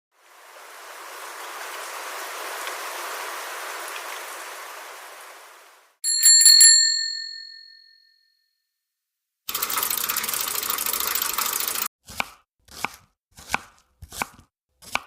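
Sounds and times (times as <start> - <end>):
small bell ringing: 6.0 - 8.6.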